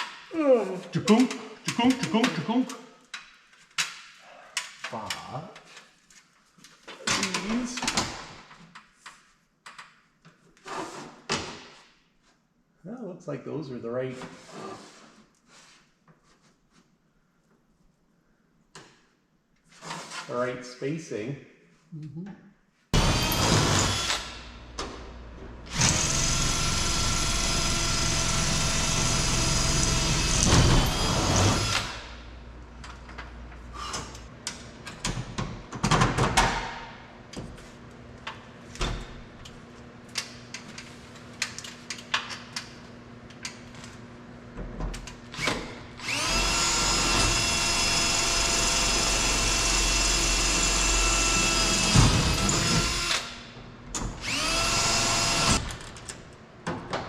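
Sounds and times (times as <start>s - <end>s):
power drill drilling metal: 23.0s - 24.5s, 25.7s - 32.2s, 45.4s - 53.4s, 54.2s - 55.6s.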